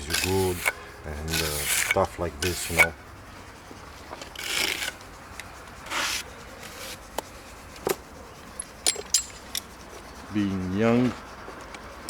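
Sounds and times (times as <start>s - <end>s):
tool scraping on wall: 0.0s - 3.0s, 3.8s - 8.0s
sharp metallic clicks and clinks: 8.5s - 10.0s.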